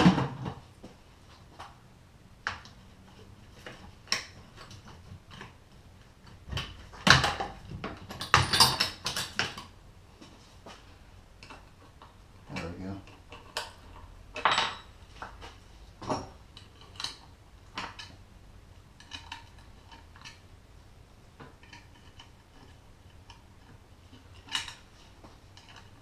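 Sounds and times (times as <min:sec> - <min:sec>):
metal parts clinking on bench: 0:08.1 - 0:09.6, 0:14.4 - 0:14.9.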